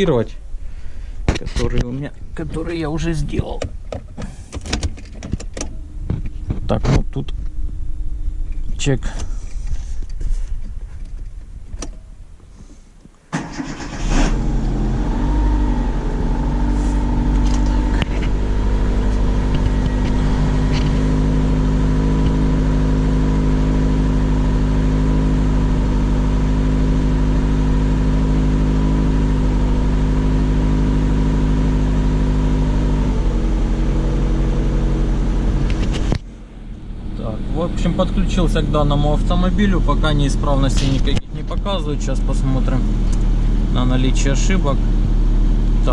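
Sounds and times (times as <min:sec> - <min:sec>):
car engine starting and idling: 0:13.3 - 0:45.9
thin whine: 0:14.2 - 0:43.6.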